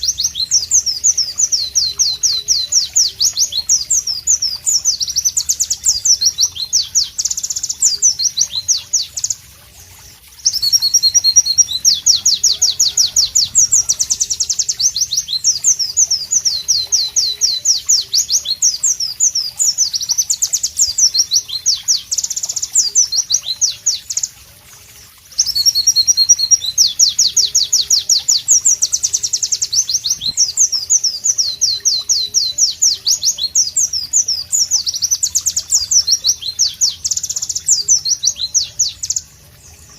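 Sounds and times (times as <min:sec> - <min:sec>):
bird singing high sweeping notes: 0:10.4 - 0:22.1.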